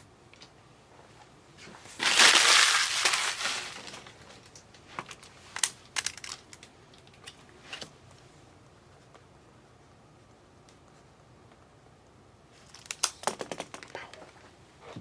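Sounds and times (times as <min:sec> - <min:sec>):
plastic packaging crinkling: 0:01.9 - 0:04.6.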